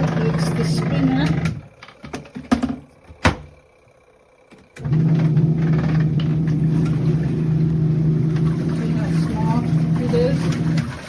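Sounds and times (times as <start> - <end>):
washing machine motor humming: 0.0 - 11.0.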